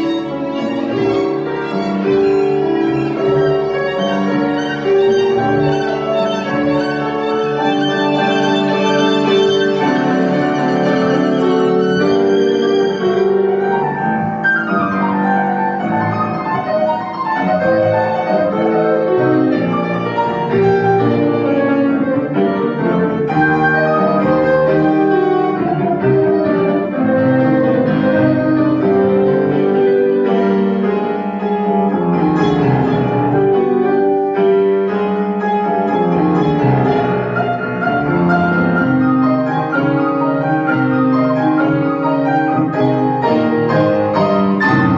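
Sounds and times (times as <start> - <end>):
violin playing classical piece: 0.0 - 14.4
piano chords: 0.0 - 44.9.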